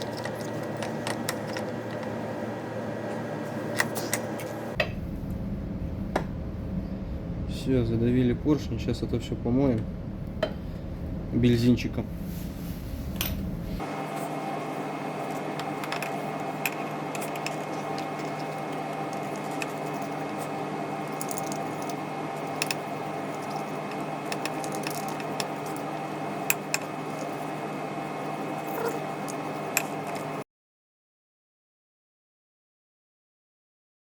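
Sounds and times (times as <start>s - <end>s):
wet squishing and scrubbing: 15.2s - 26.1s.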